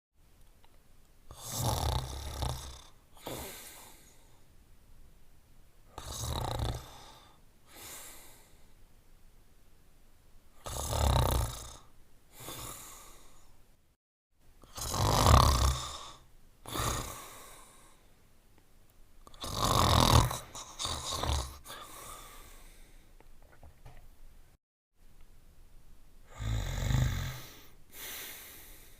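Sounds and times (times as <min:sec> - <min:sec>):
cartoon dog snoring: 0:01.3 - 0:04.0, 0:06.0 - 0:07.3, 0:10.6 - 0:13.0, 0:14.6 - 0:17.4, 0:19.3 - 0:21.8, 0:26.3 - 0:27.7.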